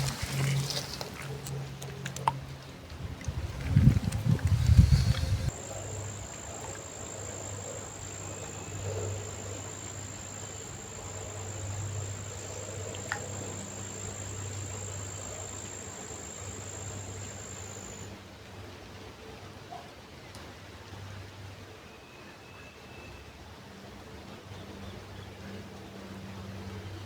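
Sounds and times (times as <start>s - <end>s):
faint low hum: 0.0s - 18.1s
insect trilling: 4.2s - 18.1s.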